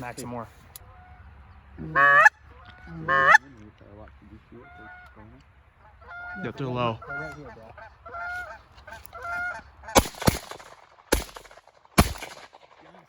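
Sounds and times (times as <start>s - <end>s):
geese honking: 0.8s - 3.5s, 4.4s - 10.1s
shotgun blasts: 9.9s - 13.0s.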